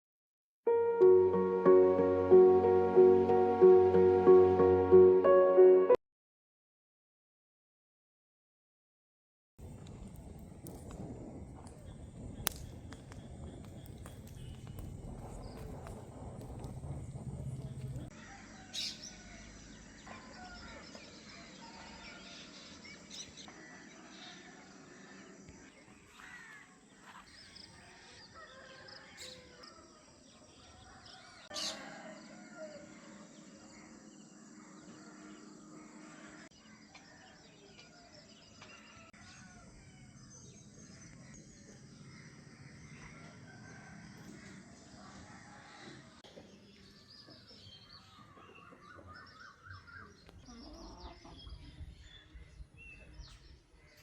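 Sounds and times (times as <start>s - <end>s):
small birds chirping: 11.6s - 32.0s.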